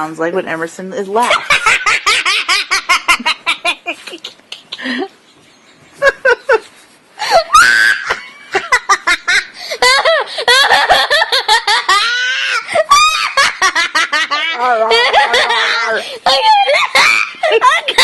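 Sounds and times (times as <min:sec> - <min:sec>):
girl laughing: 0:01.2 - 0:18.0
girl squealing: 0:07.2 - 0:08.3, 0:11.9 - 0:13.5, 0:14.6 - 0:18.0.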